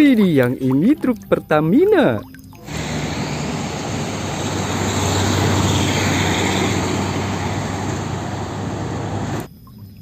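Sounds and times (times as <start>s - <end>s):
water jet spraying: 2.6s - 9.5s
sprayer humming: 2.7s - 9.5s.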